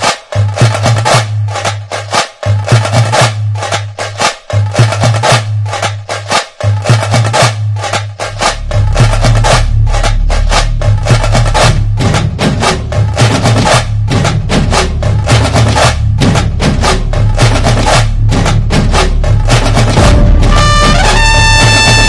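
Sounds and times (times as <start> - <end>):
music with rapid drums and clicks: 0.0 - 22.0
deep bass: 8.2 - 22.0.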